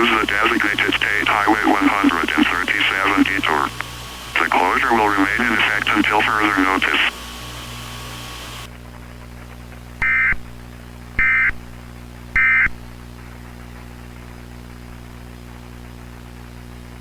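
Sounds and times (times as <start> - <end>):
clicks: 0.0 - 7.2.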